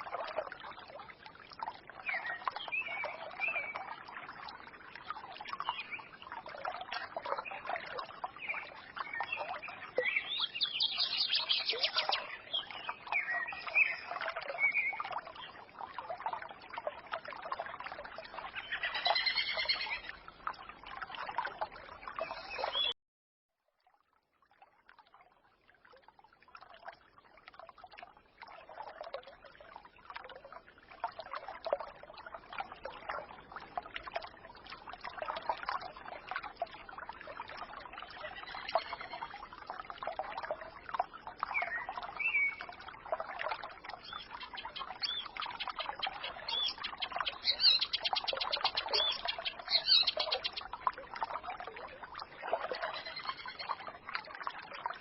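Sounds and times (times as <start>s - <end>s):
brook babbling: 0.0s - 23.0s, 23.6s - 55.0s
small birds chirping: 8.4s - 15.6s, 18.5s - 20.1s, 43.9s - 50.7s.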